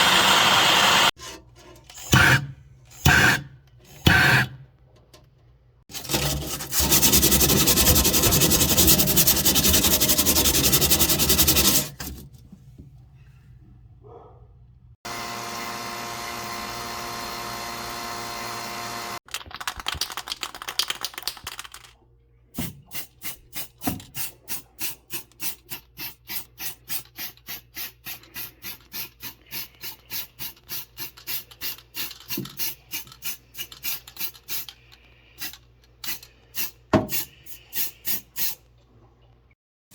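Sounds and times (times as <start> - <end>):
hand tool scraping: 0.9 - 4.5, 5.9 - 12.3
back-and-forth rubbing strokes: 6.0 - 12.2.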